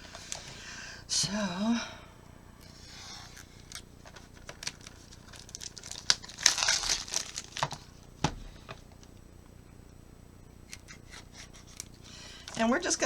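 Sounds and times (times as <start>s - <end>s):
knife cutting packaging: 3.0s - 7.9s, 10.7s - 12.0s.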